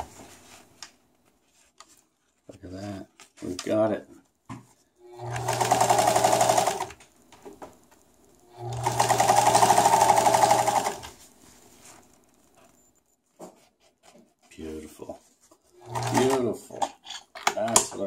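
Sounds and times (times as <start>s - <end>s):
electric sewing machine stitching: 5.1s - 7.1s, 8.5s - 11.2s, 15.8s - 16.6s.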